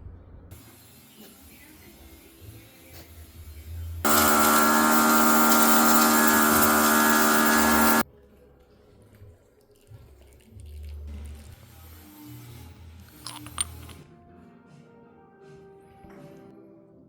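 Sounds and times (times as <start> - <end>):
hydraulic pump whine with hiss: 4.0 - 8.0.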